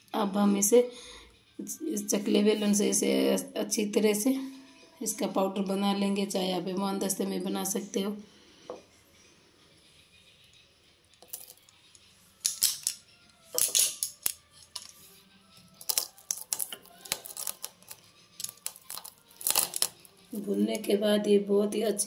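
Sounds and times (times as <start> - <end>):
spices crushed under rolling pin: 15.8 - 20.1.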